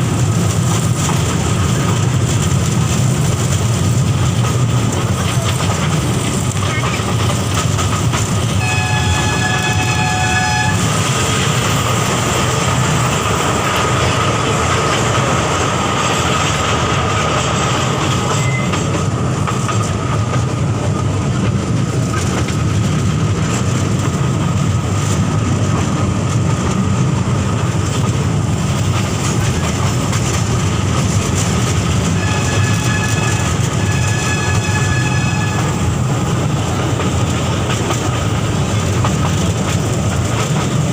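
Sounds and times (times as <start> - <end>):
toy train rumbling on track: 0.0 - 40.9
toy train horn: 8.6 - 11.0, 32.1 - 36.0.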